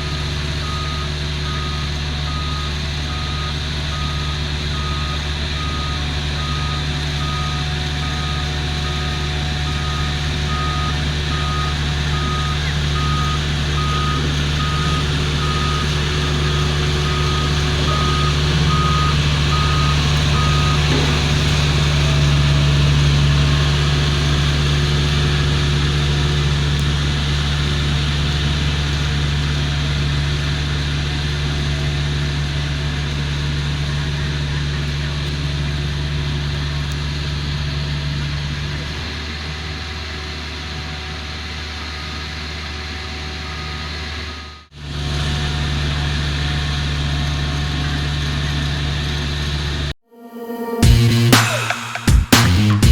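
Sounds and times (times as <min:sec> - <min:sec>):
reversing alarm beeping: 0:00.0 - 0:23.4
road roller diesel engine: 0:00.0 - 0:50.0.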